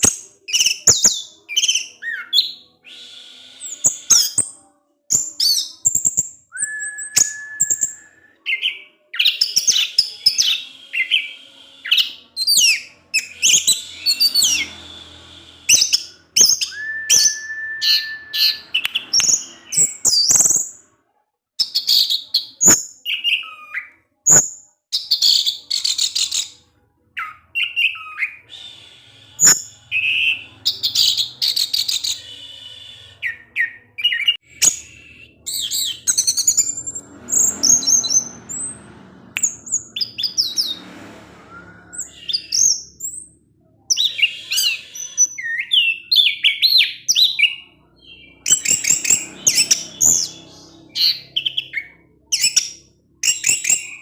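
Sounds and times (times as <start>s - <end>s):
thrush singing: 0.0s - 21.0s.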